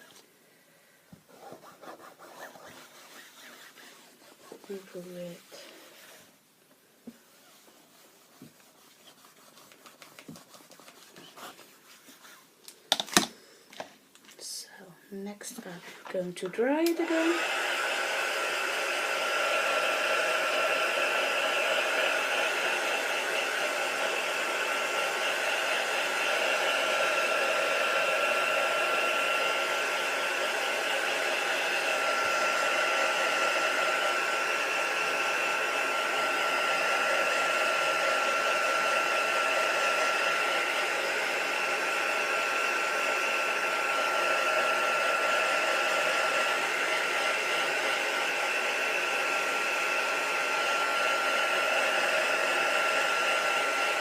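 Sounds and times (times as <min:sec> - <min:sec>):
hot-air dryer blowing with whine: 0:00.0 - 0:00.2, 0:16.6 - 0:54.0.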